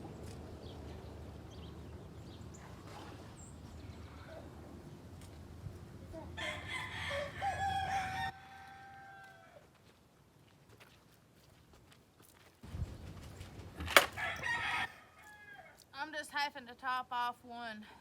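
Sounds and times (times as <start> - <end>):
rooster crowing: 6.4 - 9.7, 14.0 - 15.8.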